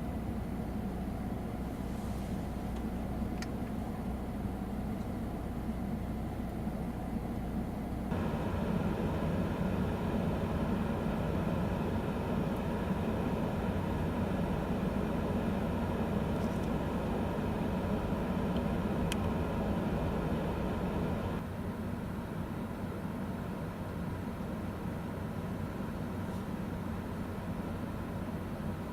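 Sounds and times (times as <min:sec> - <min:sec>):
engine drone: 0:00.0 - 0:21.5
low hum: 0:08.1 - 0:21.4.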